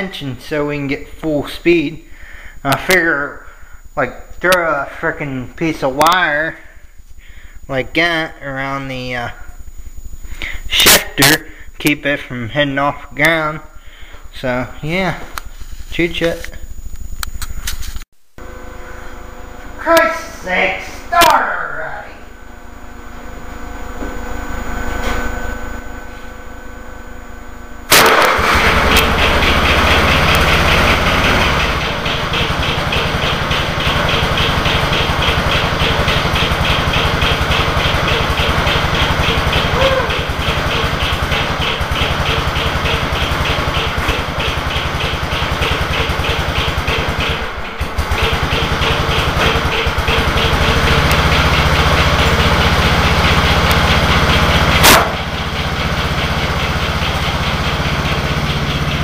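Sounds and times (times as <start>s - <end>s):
small mower engine running: 18.4s - 59.0s
sharp crack: 27.9s - 31.3s, 54.6s - 55.4s.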